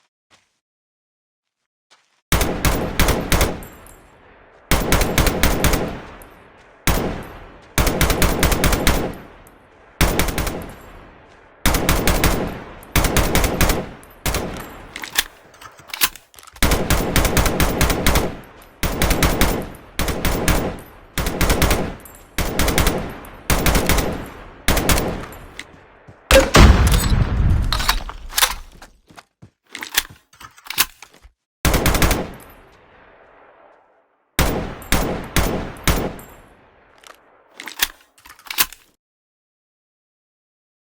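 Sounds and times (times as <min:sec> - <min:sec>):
machine-gun bursts with echo: 0:04.7 - 0:06.1, 0:10.0 - 0:10.8, 0:11.6 - 0:15.9, 0:16.6 - 0:25.6, 0:31.7 - 0:32.4.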